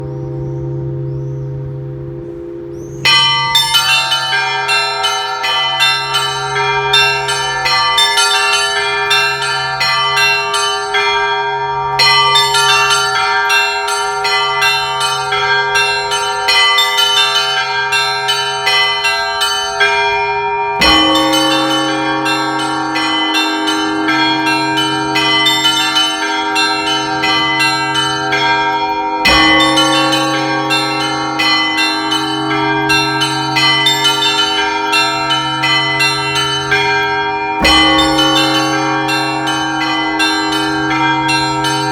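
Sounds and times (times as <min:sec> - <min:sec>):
deep large bell ringing: 0:00.0 - 0:41.9
small bells struck rapidly: 0:03.1 - 0:41.9
mid-size bell strokes: 0:20.8 - 0:41.9.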